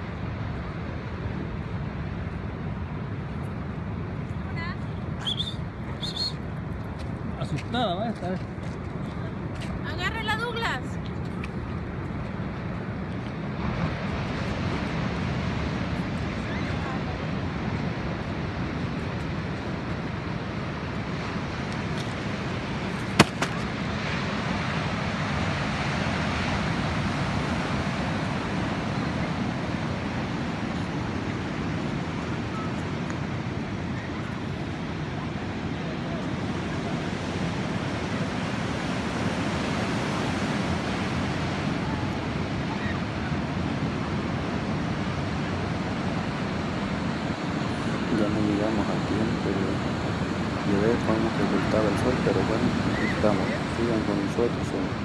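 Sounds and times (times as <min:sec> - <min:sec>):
ocean surf washing: 0:00.0 - 0:55.0.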